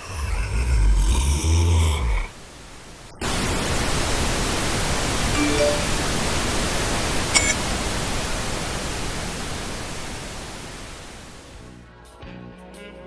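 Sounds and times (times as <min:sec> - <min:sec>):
static hiss: 0:00.0 - 0:11.9
small click: 0:07.4 - 0:07.6.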